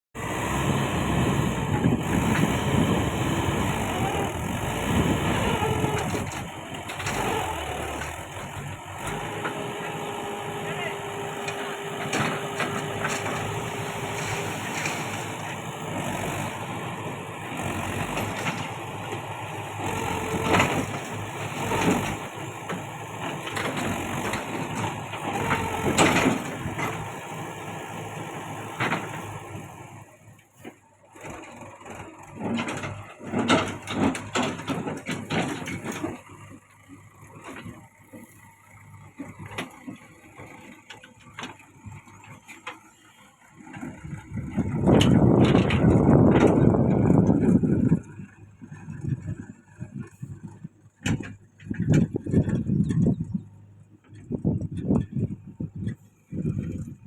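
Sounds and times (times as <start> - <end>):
heavy diesel engine running: 0.2 - 57.0
irregular clatter and bursts: 10.7 - 16.6.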